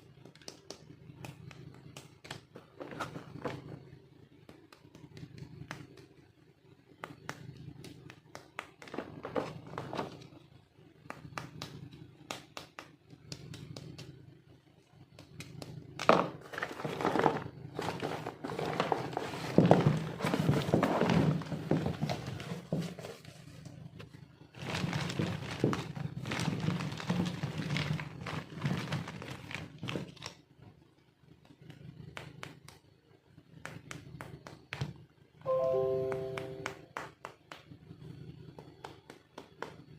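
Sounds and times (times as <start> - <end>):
plastic packaging rustling: 16.5 - 23.3, 24.6 - 30.4.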